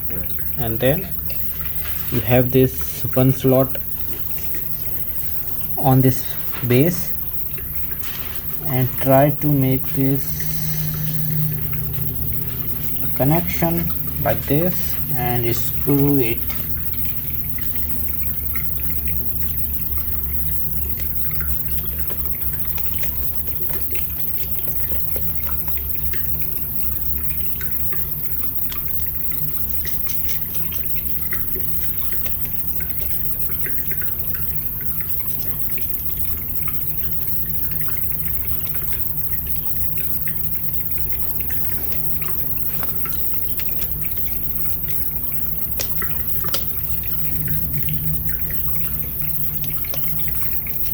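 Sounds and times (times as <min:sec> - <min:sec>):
steady low hum: 0:00.0 - 0:23.4.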